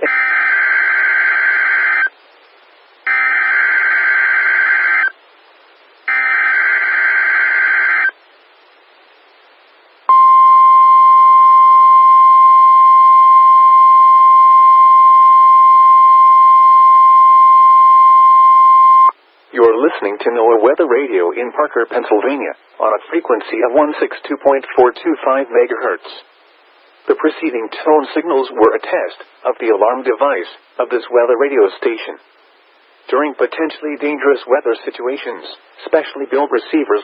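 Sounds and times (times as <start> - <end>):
steady warning alarm tone: 6.1 - 8.1, 10.1 - 19.1.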